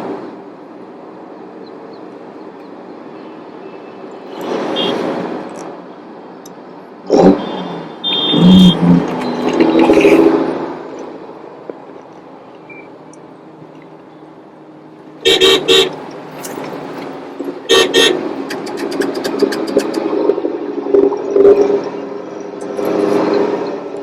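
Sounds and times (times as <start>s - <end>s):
traffic engine noise: 0.0s - 24.0s
vehicle horns honking: 3.2s - 5.2s, 7.1s - 10.4s, 15.2s - 16.0s, 17.6s - 18.3s.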